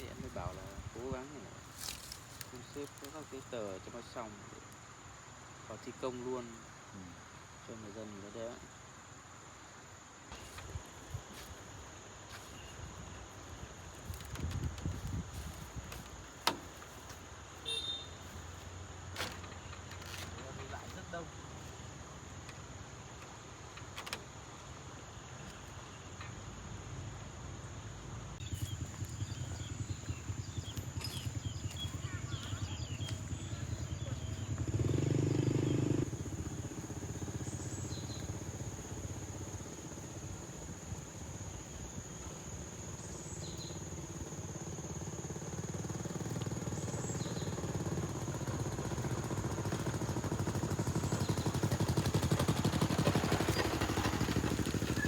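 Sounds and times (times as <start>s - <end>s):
motorbikes passing: 28.4s - 55.0s.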